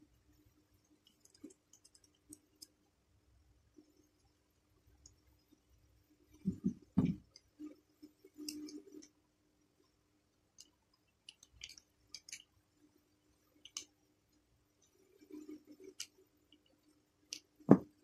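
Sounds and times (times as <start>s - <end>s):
sharp clicks of metal and plastic parts: 10.6s - 12.6s, 13.6s - 14.0s.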